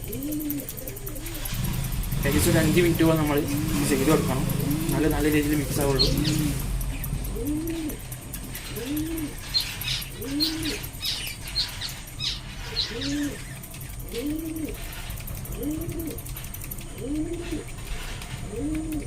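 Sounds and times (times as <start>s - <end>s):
pigeons cooing: 0.0s - 19.0s.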